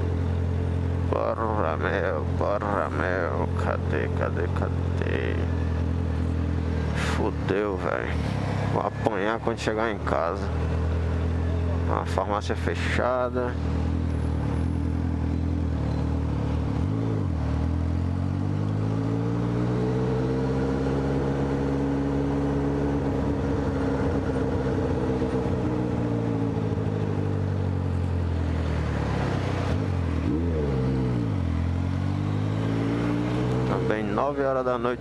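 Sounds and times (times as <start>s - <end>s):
motorcycle engine revving: 13.4s - 35.0s.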